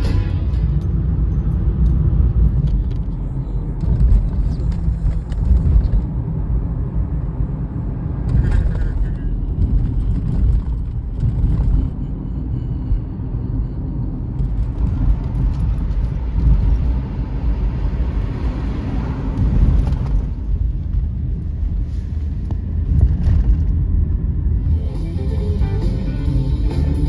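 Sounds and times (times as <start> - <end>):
train passing rumble: 0.0 - 27.0.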